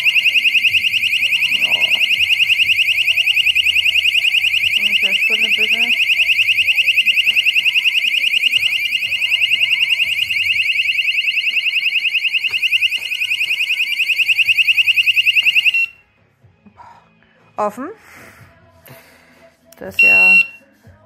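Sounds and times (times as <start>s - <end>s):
warbling electronic alarm siren: 0.0s - 16.0s, 20.0s - 20.6s.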